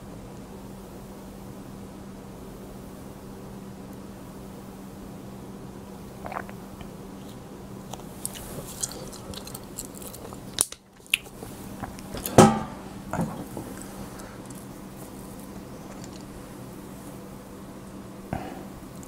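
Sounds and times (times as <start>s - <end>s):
steady low hum: 0.0s - 19.0s
chewing with crisp crackling: 6.1s - 19.0s.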